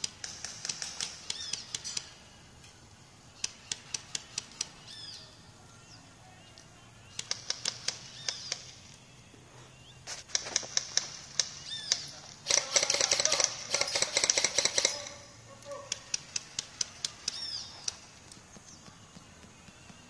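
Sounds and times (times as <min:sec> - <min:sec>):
airsoft guns firing: 0:00.0 - 0:02.2, 0:07.1 - 0:08.8, 0:10.3 - 0:18.2.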